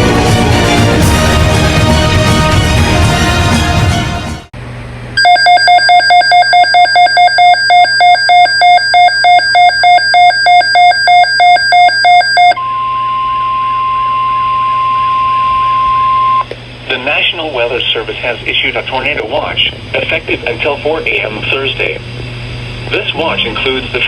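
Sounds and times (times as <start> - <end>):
music: 0.0 - 4.5
rapid electronic alarm beeps: 5.2 - 16.4
steady warning tone: 5.2 - 24.0.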